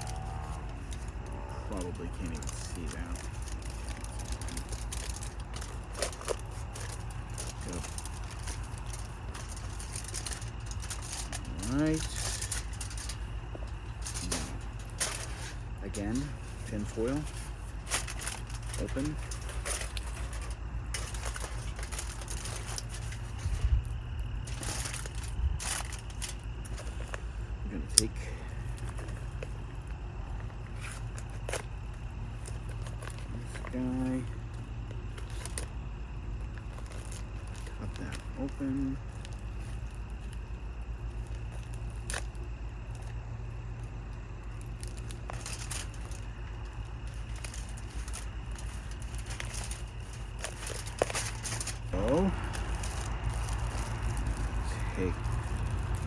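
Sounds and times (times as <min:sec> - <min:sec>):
low rumble: 0:00.0 - 0:27.7, 0:42.8 - 0:56.0
aluminium foil crinkling: 0:00.0 - 0:56.0.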